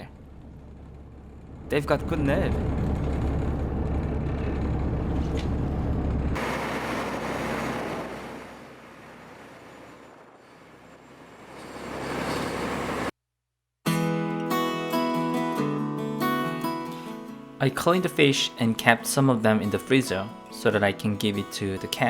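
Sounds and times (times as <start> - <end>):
boat engine rumbling: 0.0 - 13.1
wind: 0.0 - 13.1
water rushing: 6.4 - 13.1.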